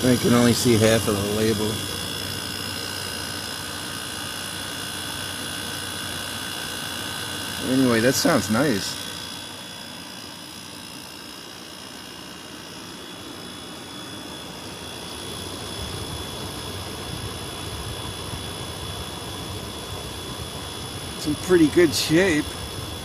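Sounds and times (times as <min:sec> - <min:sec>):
air conditioner running: 0:00.0 - 0:23.0.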